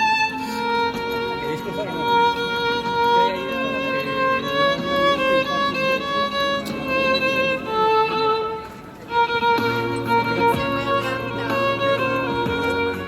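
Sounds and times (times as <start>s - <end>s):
violin melody: 0.0s - 13.0s.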